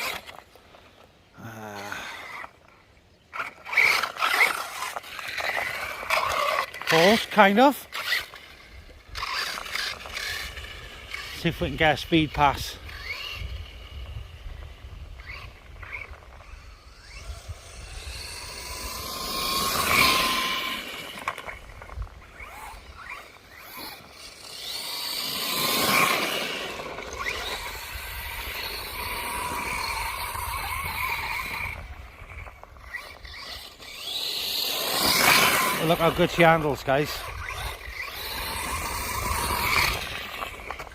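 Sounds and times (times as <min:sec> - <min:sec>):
rc truck motor whine: 0:00.0 - 0:40.9
wind rumble on microphone: 0:12.8 - 0:19.2.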